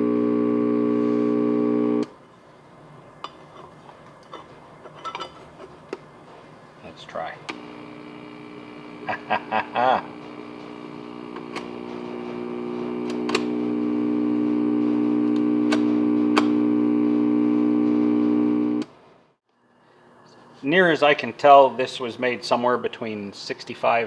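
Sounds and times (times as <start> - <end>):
electrical hum from amplifier: 0.0 - 3.2, 6.8 - 19.0.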